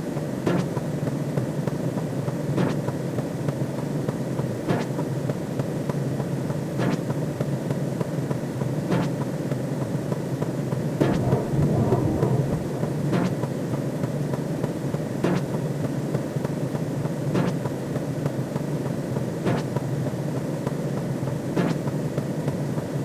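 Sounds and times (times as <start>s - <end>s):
low synthesized sci-fi drone: 11.0s - 14.1s.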